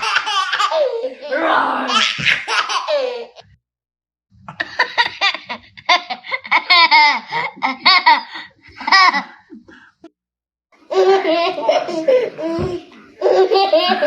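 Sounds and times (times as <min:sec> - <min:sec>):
baby laughing: 0:00.0 - 0:03.4, 0:10.9 - 0:14.0.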